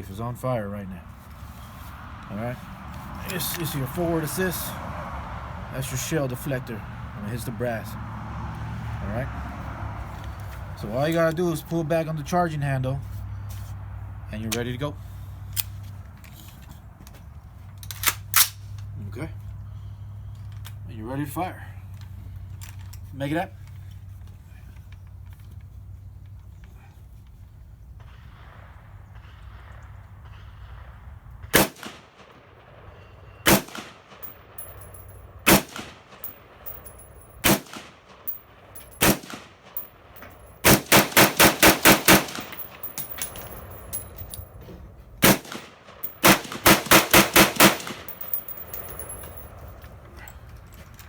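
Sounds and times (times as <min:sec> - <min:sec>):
rifle gunshots: 0:31.5 - 0:32.4, 0:33.4 - 0:34.3, 0:35.4 - 0:36.3, 0:37.4 - 0:38.4, 0:39.0 - 0:39.9, 0:40.6 - 0:43.0, 0:45.2 - 0:48.4.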